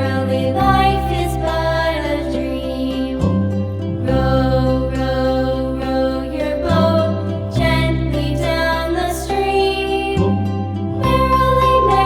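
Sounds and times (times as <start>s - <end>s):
sustained synth chords over bass: 0.0s - 12.0s.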